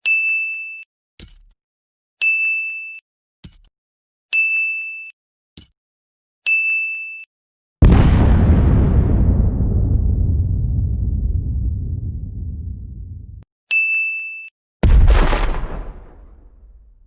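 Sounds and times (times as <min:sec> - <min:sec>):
explosion blast with deep rumble: 0:07.8 - 0:13.4, 0:14.8 - 0:17.0.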